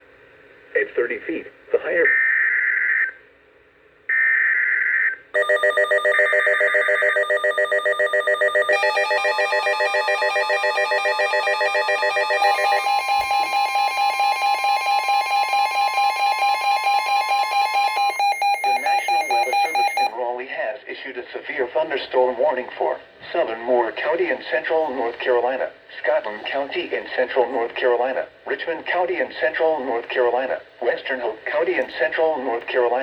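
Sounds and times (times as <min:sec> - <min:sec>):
pulsing electronic alarm: 0:04.1 - 0:20.1.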